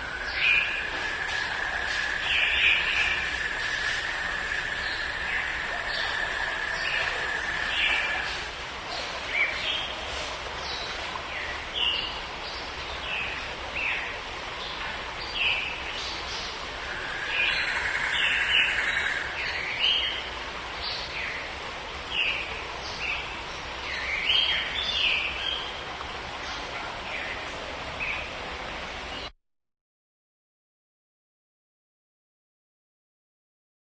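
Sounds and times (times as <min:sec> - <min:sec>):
birds chirping: 0:00.0 - 0:08.4, 0:15.4 - 0:20.2
long steady bird call: 0:00.0 - 0:08.5, 0:14.7 - 0:21.4
background hiss: 0:00.0 - 0:29.3.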